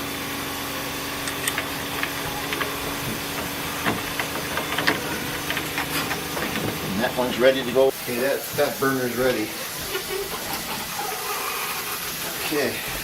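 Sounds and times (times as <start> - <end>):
engine room hum and hiss: 0.0 - 13.0
metal parts clicking and tapping: 1.2 - 6.8.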